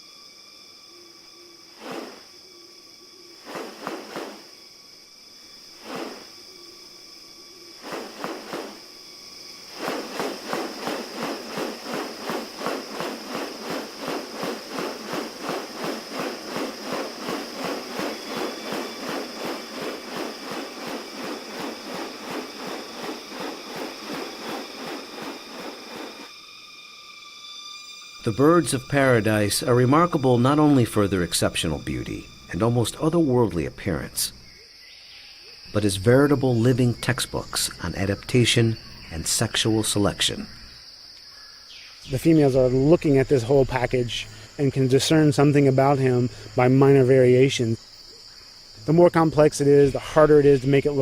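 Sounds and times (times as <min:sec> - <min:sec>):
insects droning: 0:00.0 - 0:51.0
steady pulsing strokes: 0:03.4 - 0:04.6, 0:05.8 - 0:06.6, 0:07.5 - 0:33.2.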